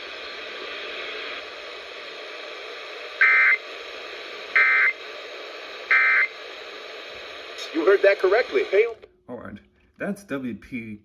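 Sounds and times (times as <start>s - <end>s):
radio hiss: 0.0s - 9.1s
buzzy data bursts: 5.9s - 6.3s.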